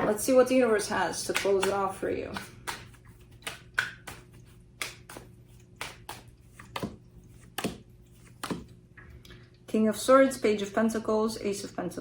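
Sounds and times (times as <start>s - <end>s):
faint steady hum: 0.0s - 12.0s
cards clicking and tapping: 1.1s - 8.8s.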